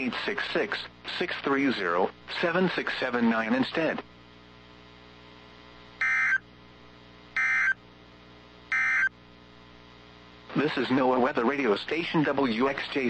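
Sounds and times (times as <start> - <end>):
faint broadcast hum: 0.0 - 13.0
digital data bursts: 8.7 - 9.1.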